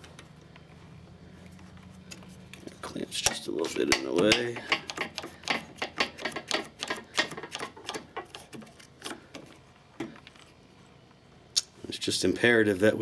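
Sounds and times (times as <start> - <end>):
metallic clicks and taps of tools: 3.3 - 8.4.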